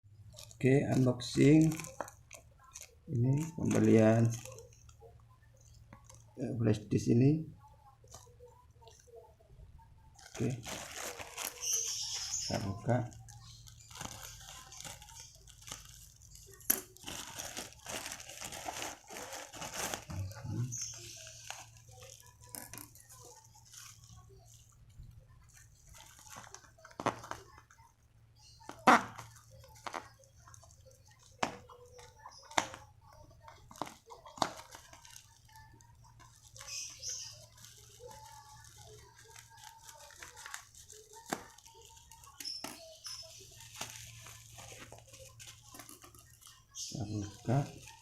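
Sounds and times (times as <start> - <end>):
packaging crinkling and rustling: 0.2 - 6.4, 10.1 - 48.0.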